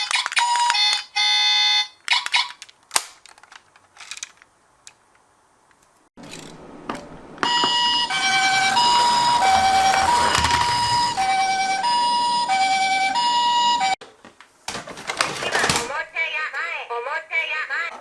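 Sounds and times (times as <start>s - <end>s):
pulsing electronic alarm tone: 7.4s - 14.0s
two-tone ambulance siren: 7.4s - 14.0s.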